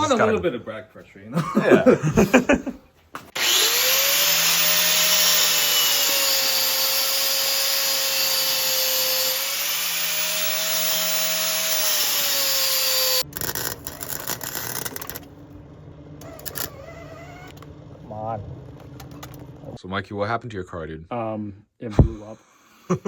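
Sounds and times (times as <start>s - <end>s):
power tool whining: 3.3s - 19.7s.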